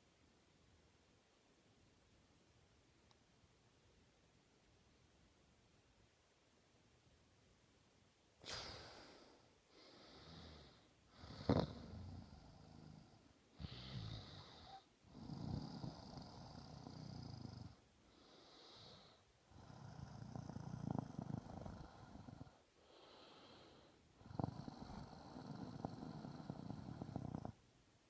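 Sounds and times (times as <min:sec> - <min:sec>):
woman snoring: 0:09.9 - 0:27.6
loud snort: 0:10.3 - 0:13.0, 0:13.6 - 0:17.8, 0:24.2 - 0:27.6.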